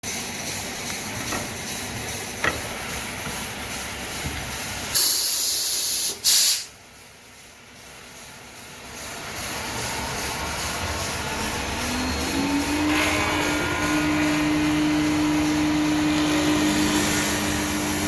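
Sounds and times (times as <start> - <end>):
wood lathe running: 0.3 - 4.9, 9.3 - 18.0
loud bursts of hiss: 4.0 - 6.8.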